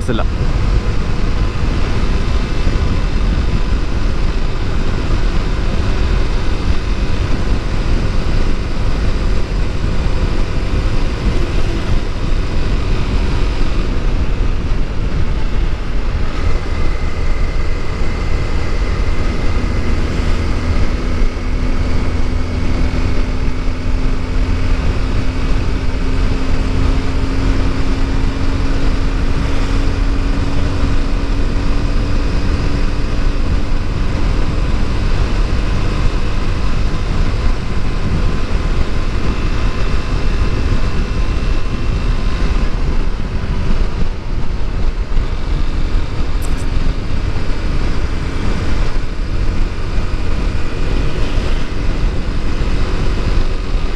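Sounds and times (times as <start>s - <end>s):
motorcycle engine running: 0.0s - 53.9s
wind rumble on microphone: 0.0s - 53.9s.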